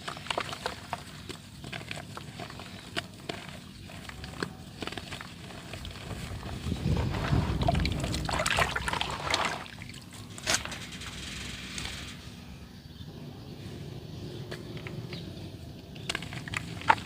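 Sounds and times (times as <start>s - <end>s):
dirt crumbling into water: 0.0s - 10.7s.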